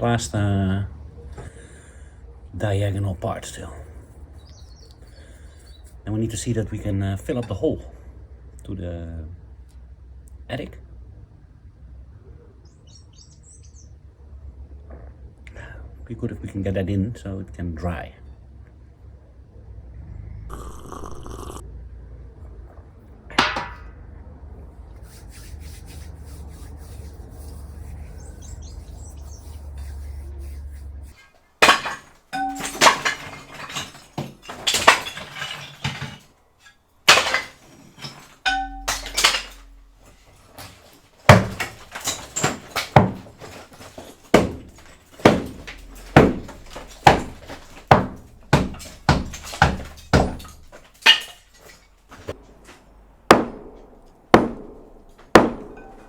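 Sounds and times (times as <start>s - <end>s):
hammer striking brick: 23.3s - 23.9s, 31.6s - 36.2s, 37.1s - 39.9s, 40.6s - 51.4s, 53.3s - 56.0s
sharp knock: 53.3s - 56.0s.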